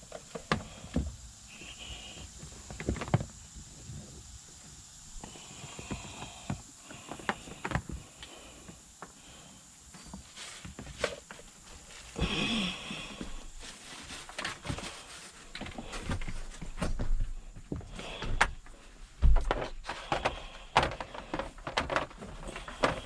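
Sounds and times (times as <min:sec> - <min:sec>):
scraping rustle: 0:10.0 - 0:12.2, 0:13.4 - 0:16.8.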